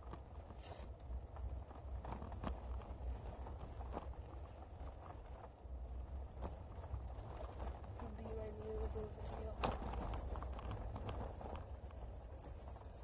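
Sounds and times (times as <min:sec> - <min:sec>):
steady low rumble: 0:00.0 - 0:13.0
short hiss: 0:00.6 - 0:00.9.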